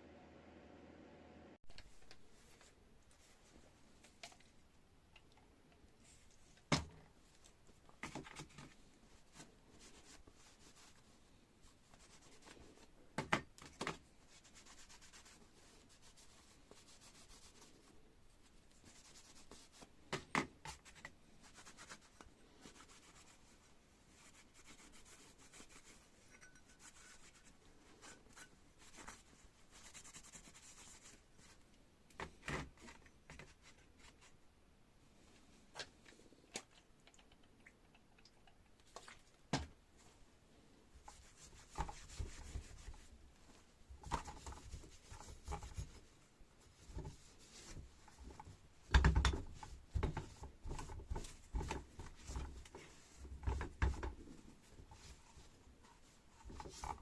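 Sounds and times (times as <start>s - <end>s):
faint rubbing on metal: 20.7s - 31.6s.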